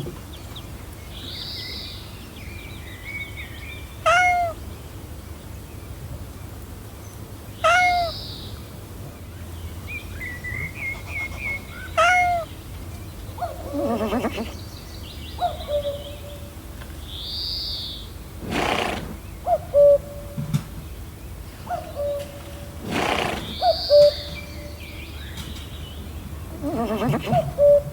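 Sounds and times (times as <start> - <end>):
brief animal calls: 13.4 - 14.6, 26.5 - 27.9
bird chirps: 21.6 - 27.9.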